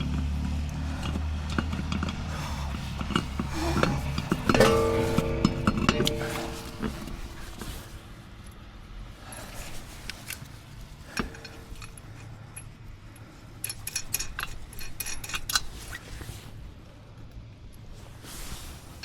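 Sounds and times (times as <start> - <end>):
metal tools clinking: 3.0 - 8.0, 11.1 - 16.0.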